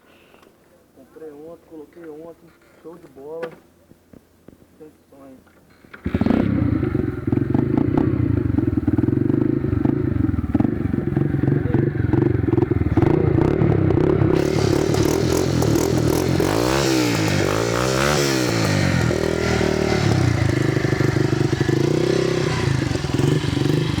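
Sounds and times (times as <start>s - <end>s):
motorcycle engine idling and revving: 5.9s - 24.0s.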